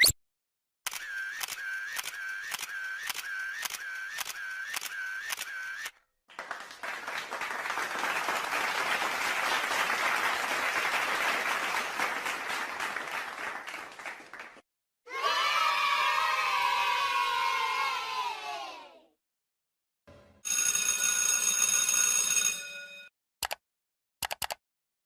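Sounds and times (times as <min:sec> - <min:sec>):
applause: 0:06.3 - 0:14.7.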